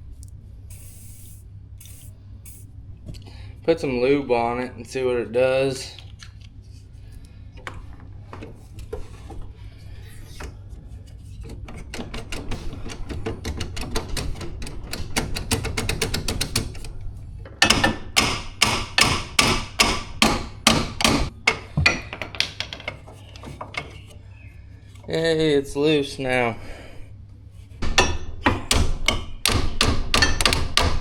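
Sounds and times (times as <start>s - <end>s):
hammer tapping on metal: 17.6s - 22.1s.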